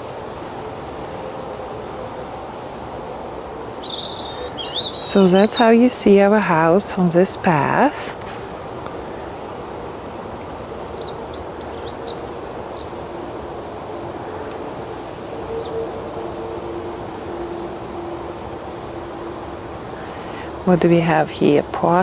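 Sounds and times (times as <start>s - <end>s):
bird chirping: 0.0s - 0.4s, 3.8s - 8.2s, 10.4s - 13.2s, 14.4s - 16.4s
insects trilling: 0.0s - 22.0s
low background hum: 0.0s - 22.0s.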